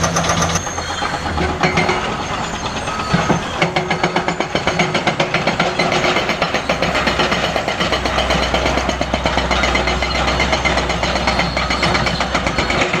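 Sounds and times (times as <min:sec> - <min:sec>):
excavator engine running: 0:00.0 - 0:13.0
hydraulic breaker hammering: 0:03.1 - 0:13.0.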